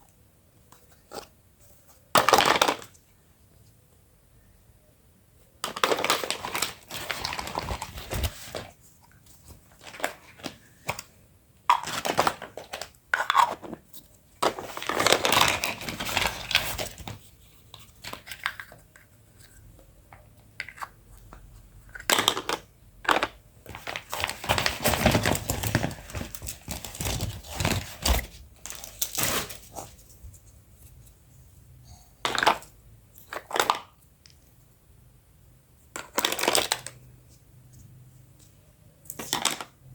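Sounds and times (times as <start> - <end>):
plastic packaging crinkling: 5.7 - 8.7, 14.4 - 17.3, 21.9 - 30.4.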